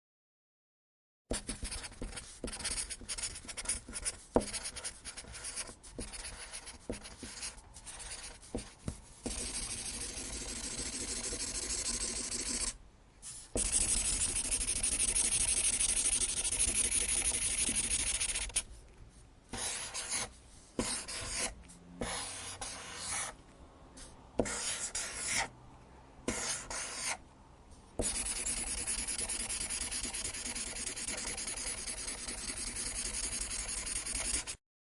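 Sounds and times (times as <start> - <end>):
marker scribbling on paper: 1.3 - 18.7, 19.5 - 23.4, 24.0 - 25.5, 26.3 - 27.2, 28.0 - 34.6
marker tapping: 1.4 - 12.7, 13.6 - 18.6, 24.4 - 25.4, 26.3 - 27.2, 28.0 - 34.6.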